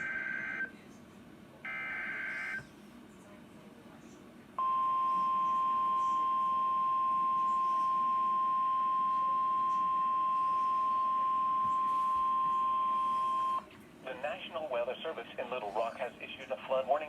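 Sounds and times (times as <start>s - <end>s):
steady high warning beep: 4.6s - 13.6s.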